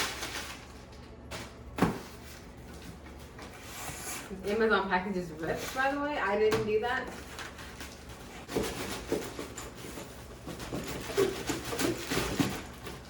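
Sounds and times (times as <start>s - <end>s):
packaging rustling and crinkling: 0.0s - 1.1s.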